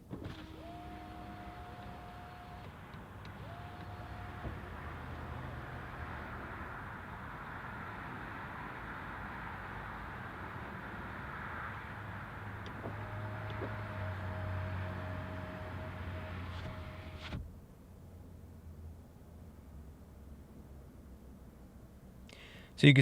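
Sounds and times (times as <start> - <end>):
highway traffic rushing: 0.0 - 17.4.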